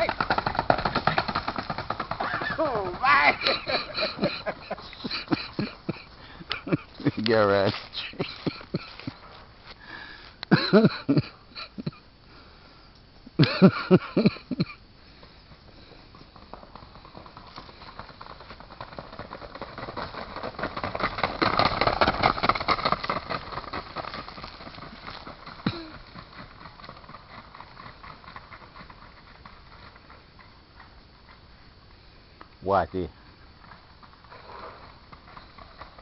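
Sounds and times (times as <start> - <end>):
horse hoofbeats: 0.0 - 9.8, 13.4 - 31.8, 33.2 - 36.0
person shouting: 2.3 - 3.5.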